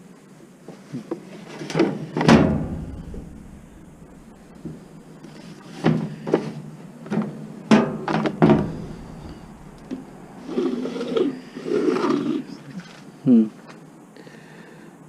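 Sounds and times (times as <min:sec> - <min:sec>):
metal parts knocking and clunking: 0:02.3 - 0:05.0, 0:08.1 - 0:10.4
rubbing and scraping: 0:08.5 - 0:10.7.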